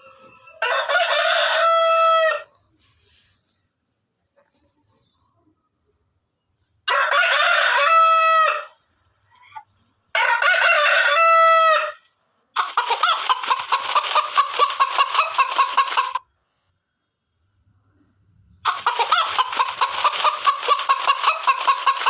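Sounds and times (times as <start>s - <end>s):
rooster crowing: 0.0s - 2.5s, 6.9s - 8.7s, 10.1s - 12.0s
chicken clucking: 0.0s - 6.1s, 9.0s - 16.3s, 18.6s - 22.0s.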